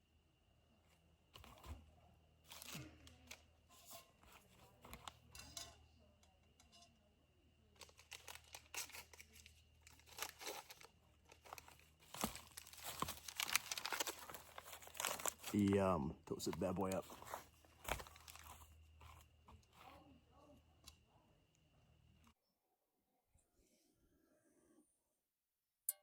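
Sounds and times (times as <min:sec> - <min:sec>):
plastic wrapper crinkling and tearing: 0:02.4 - 0:03.4, 0:07.8 - 0:20.0.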